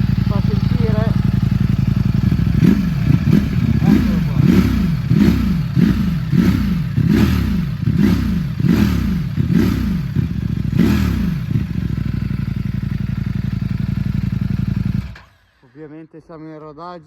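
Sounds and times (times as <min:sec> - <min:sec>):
motorcycle engine throttle blips: 0:00.0 - 0:15.3.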